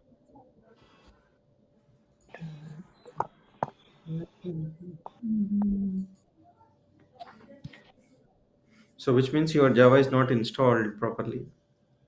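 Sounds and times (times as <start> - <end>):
low murmur of a voice: 2.2 - 9.2.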